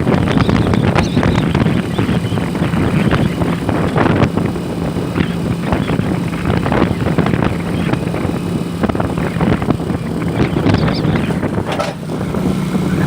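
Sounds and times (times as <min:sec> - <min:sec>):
engine humming: 0:00.0 - 0:13.0
wind buffeting microphone: 0:00.0 - 0:13.0.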